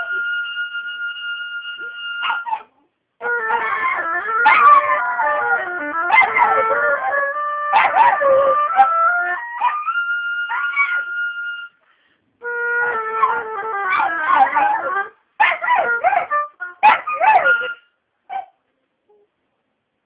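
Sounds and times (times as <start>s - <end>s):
oboe holding notes: 0.0s - 2.4s, 3.2s - 11.8s, 12.4s - 17.9s
dog howling and yelping: 1.8s - 11.6s, 13.1s - 17.8s.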